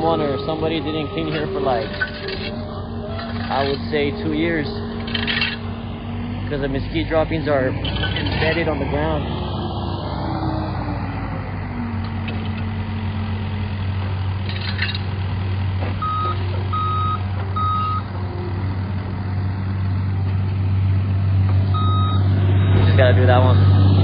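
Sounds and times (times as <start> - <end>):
low engine drone: 0.0 - 24.0
reversing alarm beeps: 16.0 - 18.1, 21.7 - 22.3.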